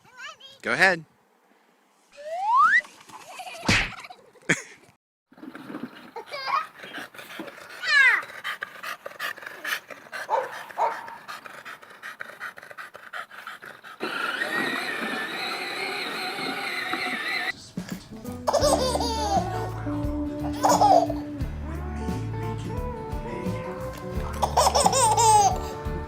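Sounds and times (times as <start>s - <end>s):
dog whining: 14.0s - 17.5s
music: 17.6s - 26.0s.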